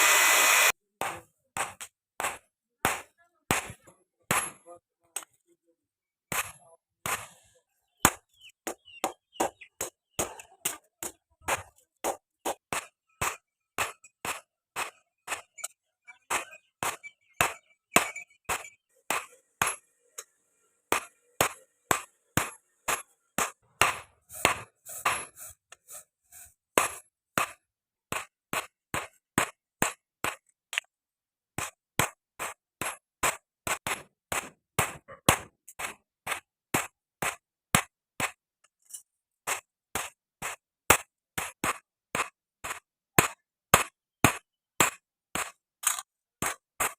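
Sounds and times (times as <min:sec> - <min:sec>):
hammer striking steel on anvil: 0:09.8 - 0:25.6.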